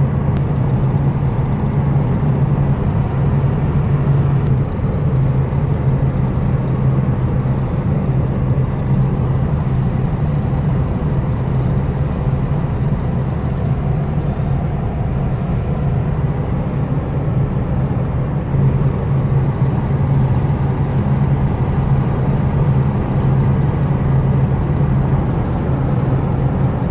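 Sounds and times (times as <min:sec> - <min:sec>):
low grinding drone: 0:00.0 - 0:26.9
road and tyre noise: 0:00.0 - 0:26.9.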